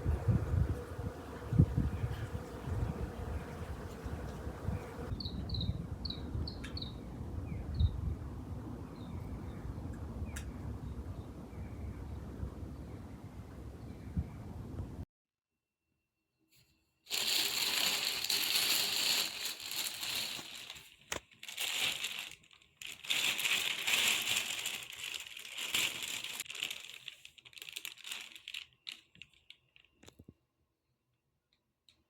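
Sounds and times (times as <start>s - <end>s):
paper or plastic crinkling: 17.1s - 30.2s.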